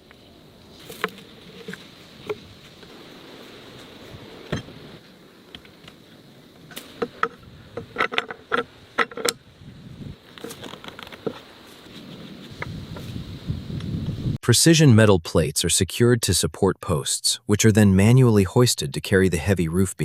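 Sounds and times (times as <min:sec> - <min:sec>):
tools clicking and knocking: 0:06.7 - 0:09.4.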